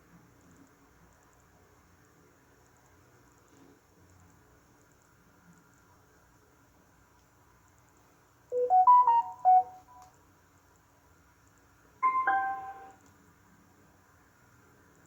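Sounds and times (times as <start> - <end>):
electronic chime: 8.6 - 10.0, 12.0 - 12.9
rising run of beeps: 8.6 - 10.0, 12.0 - 12.9.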